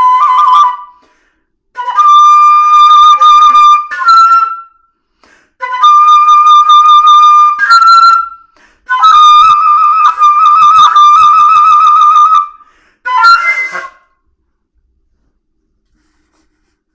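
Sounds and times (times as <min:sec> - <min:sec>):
solo flute playing: 0:00.0 - 0:05.0, 0:05.6 - 0:14.4.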